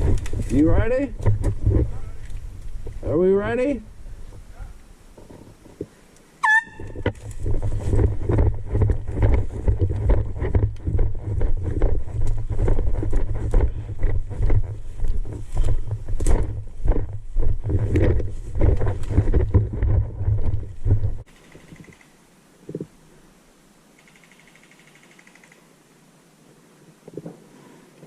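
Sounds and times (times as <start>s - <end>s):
gear rustling and rattling: 0.0s - 3.1s, 6.8s - 21.3s.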